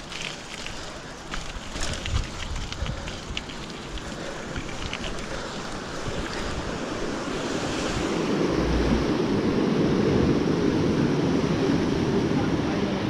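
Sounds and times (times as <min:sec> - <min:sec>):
bike clicks and rattles: 0:00.0 - 0:07.0
wind rushing over microphone: 0:01.4 - 0:13.0.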